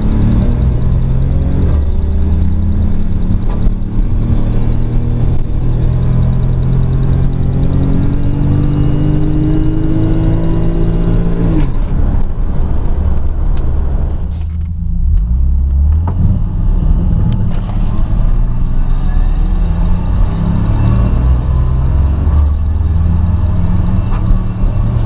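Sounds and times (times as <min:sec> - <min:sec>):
rapid high-pitched beeping: 0:00.0 - 0:11.8, 0:19.0 - 0:25.0
car engine revving: 0:00.0 - 0:14.0, 0:15.0 - 0:25.0.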